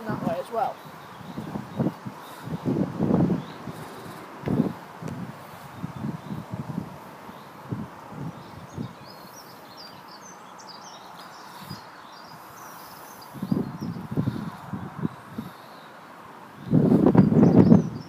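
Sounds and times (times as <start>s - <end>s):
wind buffeting microphone: 0.0s - 15.6s, 16.4s - 18.0s
background hiss: 0.0s - 18.0s
small bird chirping: 8.2s - 16.0s.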